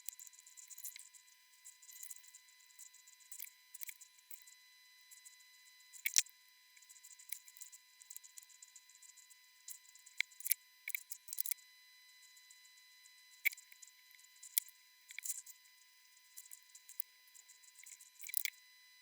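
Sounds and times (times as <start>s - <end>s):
hand tools clicking on circuit board: 6.0s - 6.2s, 18.2s - 18.5s.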